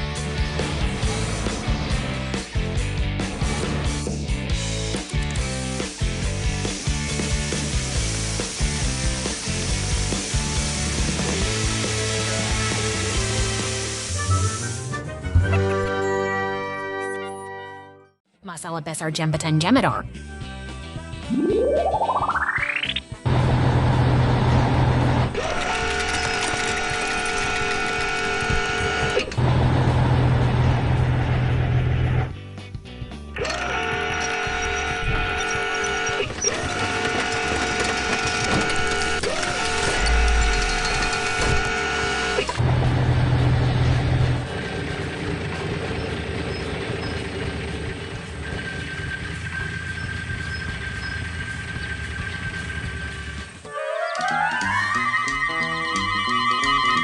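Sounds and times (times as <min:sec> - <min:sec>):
cartoon low engine rumble: 0:21.2 - 0:32.4, 0:33.4 - 0:57.0
heavy vehicle rumble: 0:23.2 - 0:25.4, 0:29.3 - 0:32.3, 0:42.6 - 0:53.6.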